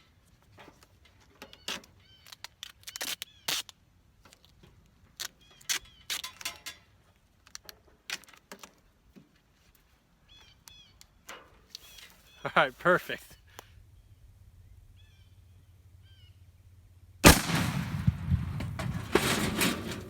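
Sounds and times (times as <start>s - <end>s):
clicks and knocks on metal grill: 18.3s - 20.0s.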